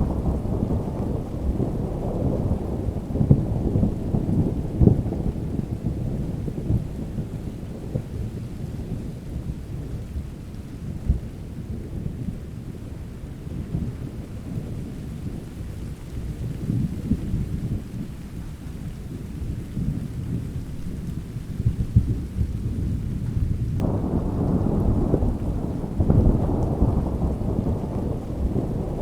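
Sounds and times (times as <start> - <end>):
thunder rumbling: 0.0 - 10.0, 19.2 - 29.0
rain: 0.0 - 29.0.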